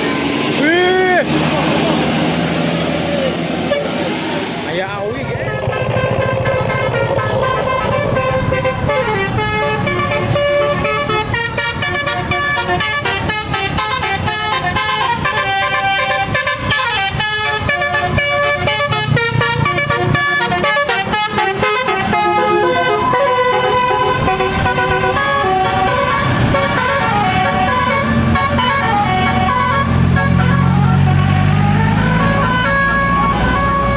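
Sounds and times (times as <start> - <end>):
bus engine rumble: 0.0 - 33.9
bus musical air horn tune: 3.4 - 4.7, 5.3 - 33.9.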